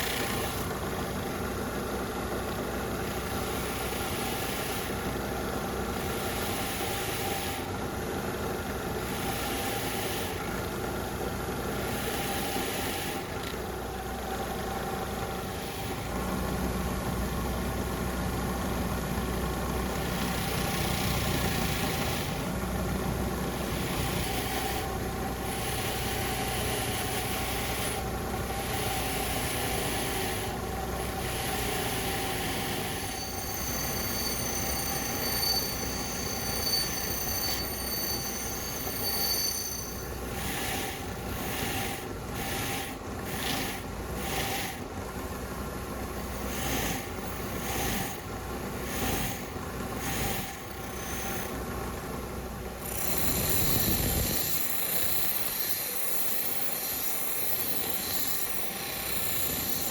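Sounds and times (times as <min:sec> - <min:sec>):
high-pitched squeal: 0:31.8 - 0:41.0
power tool on metal: 0:52.8 - 0:59.9.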